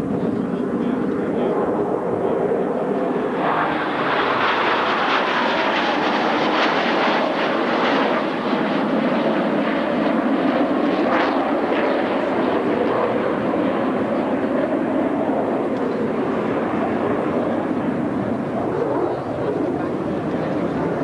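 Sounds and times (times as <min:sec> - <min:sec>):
jet engines roaring in flyby: 0:00.0 - 0:21.0.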